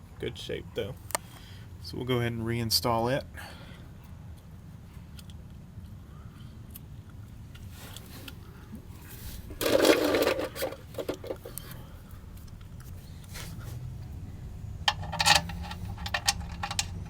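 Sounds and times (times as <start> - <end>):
loud scraping rustle: 9.0 - 12.0, 12.9 - 13.9
metal hand tools handled: 9.6 - 11.8, 14.9 - 17.0
socket wrench ratcheting: 14.9 - 17.0.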